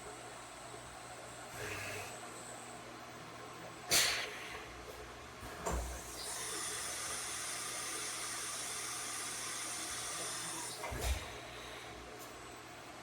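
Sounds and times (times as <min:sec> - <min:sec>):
cnc mill hiss and whine: 0:05.8 - 0:12.3.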